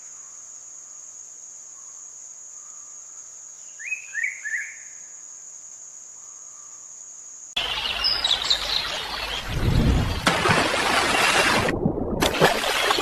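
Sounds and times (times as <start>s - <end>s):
bird chirping: 7.6s - 10.4s.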